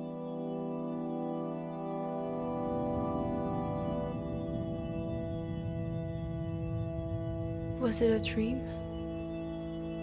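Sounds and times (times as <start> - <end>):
slow ambient music: 0.0 - 10.0.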